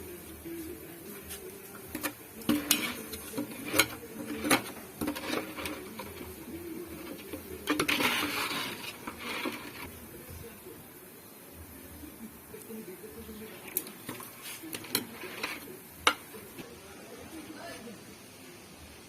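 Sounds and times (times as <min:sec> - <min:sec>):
metal cookware clinking: 0:01.8 - 0:09.9, 0:14.1 - 0:16.6.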